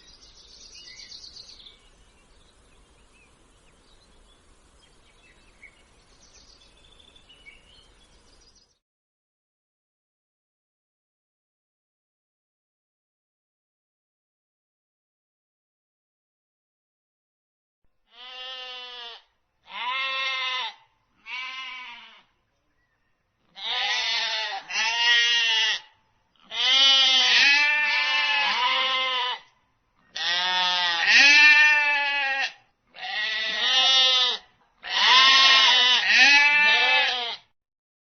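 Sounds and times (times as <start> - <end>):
goat bleating: 18.1 - 22.3, 23.5 - 29.5, 30.1 - 37.5.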